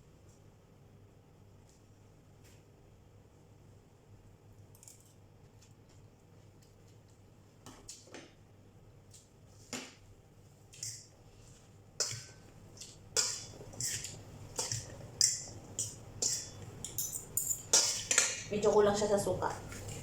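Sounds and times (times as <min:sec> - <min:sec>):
fork clinking against a bowl: 0:12.0 - 0:18.5.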